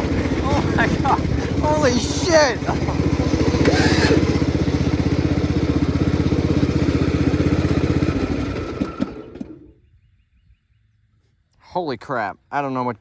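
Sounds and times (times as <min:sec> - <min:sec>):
riding lawn mower engine running: 0:00.0 - 0:09.8.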